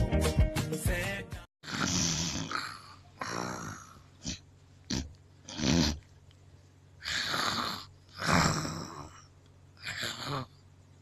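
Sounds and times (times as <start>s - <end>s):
person snoring loudly: 1.6s - 6.0s, 7.0s - 10.6s.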